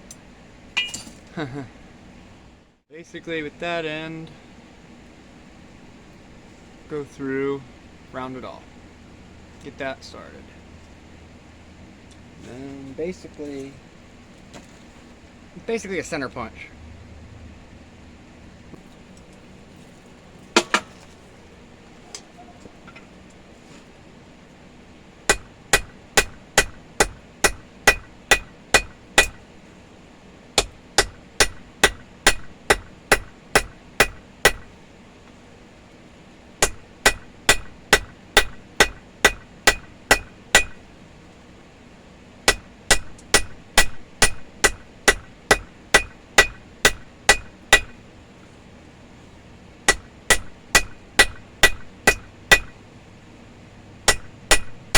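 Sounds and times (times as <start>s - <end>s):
hammer striking hot steel on anvil: 0.8s - 1.2s, 25.3s - 29.4s, 30.6s - 34.7s, 36.6s - 40.9s, 42.5s - 48.0s, 49.9s - 52.8s, 54.1s - 54.9s.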